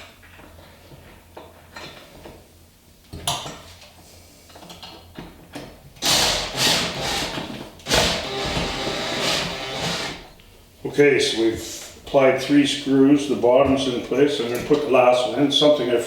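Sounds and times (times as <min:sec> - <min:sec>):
power screwdriver driving screws: 0:06.0 - 0:10.2.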